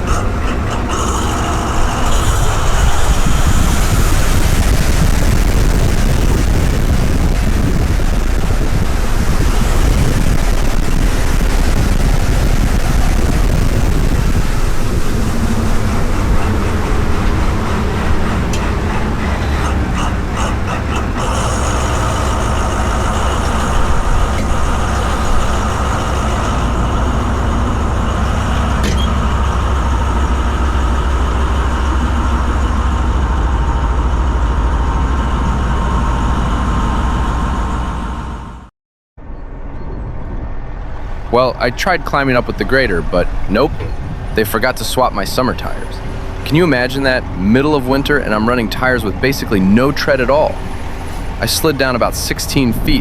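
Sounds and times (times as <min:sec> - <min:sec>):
engine hiss: 0:00.0 - 0:38.6
diesel engine droning: 0:00.0 - 0:53.0
steady whine: 0:00.0 - 0:53.0.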